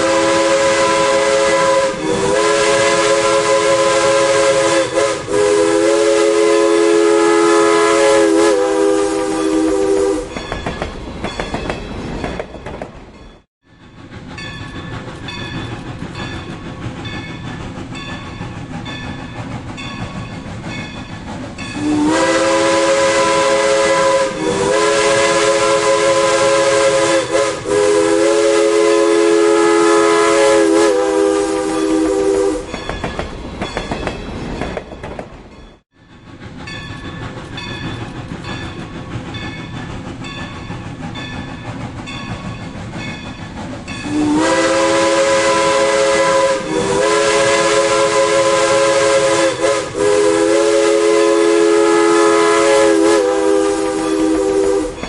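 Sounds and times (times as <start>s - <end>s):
steam locomotive whistle: 0.0s - 10.5s, 21.6s - 33.0s, 43.9s - 55.0s
train wheels clicking on rails: 8.0s - 55.0s.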